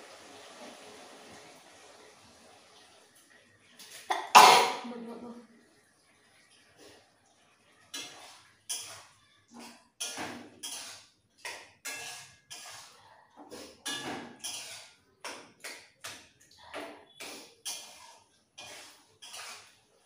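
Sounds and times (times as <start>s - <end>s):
metal spatula scraping a pan: 7.8s - 16.2s, 16.8s - 20.0s.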